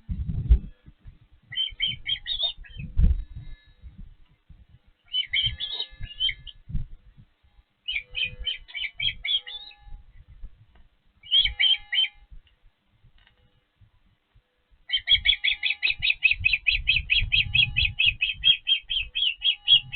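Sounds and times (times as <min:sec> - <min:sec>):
low bumps: 0:00.0 - 0:04.8
osprey chirping: 0:01.4 - 0:04.0, 0:05.0 - 0:07.2, 0:07.8 - 0:10.5, 0:11.2 - 0:12.4, 0:14.8 - 0:19.9.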